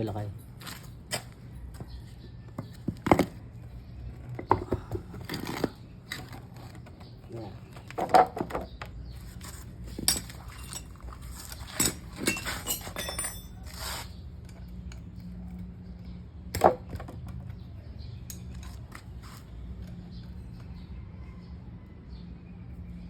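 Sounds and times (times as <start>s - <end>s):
metal tools clinking and knocking: 9.4s - 15.2s, 18.2s - 19.0s.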